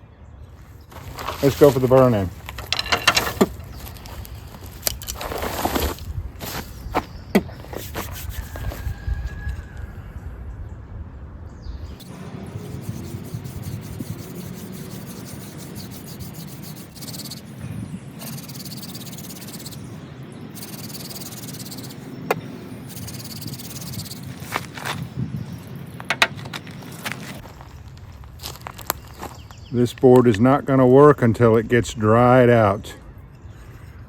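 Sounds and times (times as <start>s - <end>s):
hand drill spindle grinding wood: 0.9s - 6.6s, 12.6s - 17.4s, 18.2s - 19.8s, 20.6s - 22.0s, 22.9s - 24.9s.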